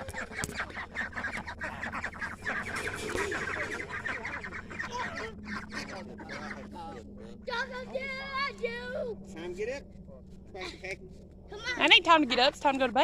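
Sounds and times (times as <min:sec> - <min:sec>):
ducks quacking: 0:00.0 - 0:08.7.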